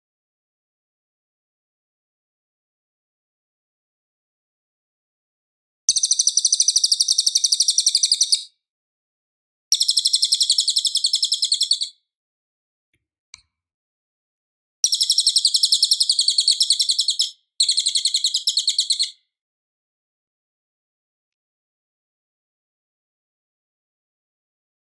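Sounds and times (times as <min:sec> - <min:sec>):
songbird chattering trills: 0:05.9 - 0:08.5, 0:09.8 - 0:11.9, 0:14.9 - 0:19.1.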